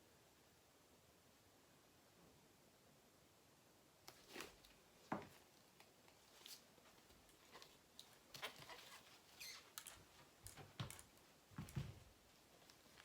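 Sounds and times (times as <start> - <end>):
faint clicks and rustles of canvas: 4.0 - 13.0.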